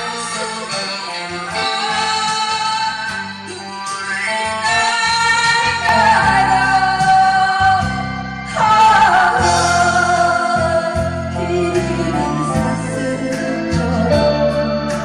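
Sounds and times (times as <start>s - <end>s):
woman singing a ballad: 0.0s - 3.7s, 4.6s - 15.0s
backing band: 0.0s - 15.0s.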